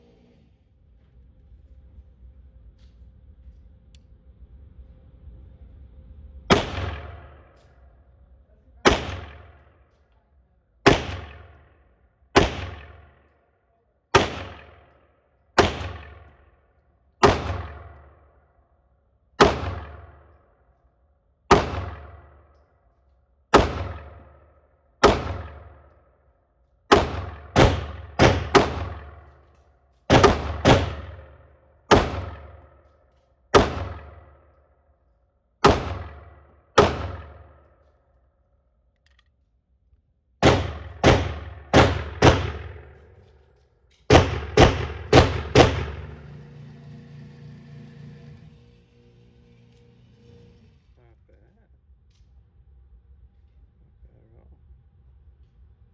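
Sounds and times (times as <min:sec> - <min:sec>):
pistol shots with ringing tail: 0:06.5 - 0:07.7, 0:08.8 - 0:10.0, 0:10.8 - 0:13.3, 0:14.1 - 0:16.6, 0:17.2 - 0:18.4, 0:19.4 - 0:20.5, 0:21.5 - 0:22.6, 0:23.5 - 0:26.0, 0:26.9 - 0:34.5, 0:35.6 - 0:37.9, 0:40.4 - 0:46.3.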